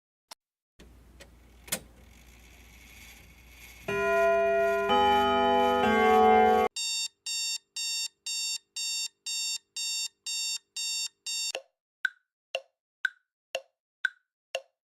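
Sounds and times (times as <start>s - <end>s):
alarm clock beeping: 3.8s - 11.6s
clock ticking: 6.8s - 14.8s.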